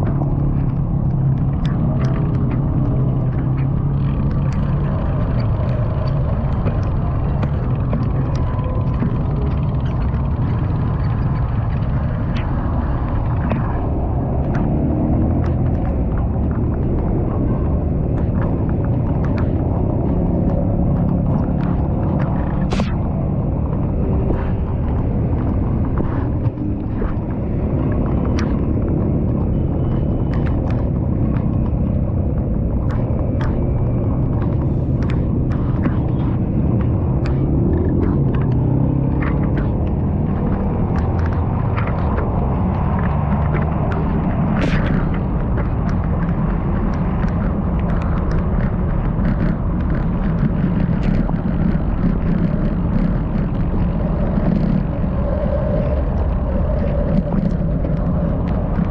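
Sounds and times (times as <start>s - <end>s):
sharp clicks and ticks: 0.0s - 58.9s
wind buffeting microphone: 0.0s - 58.9s.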